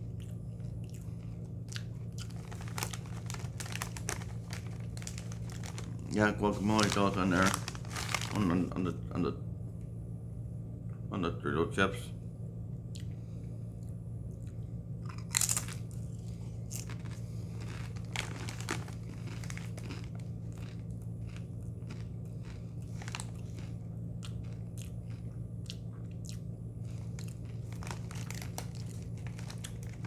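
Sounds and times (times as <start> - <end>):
steady low hum: 0.0 - 30.0
crunching tortilla chips: 0.2 - 8.8, 15.0 - 30.0.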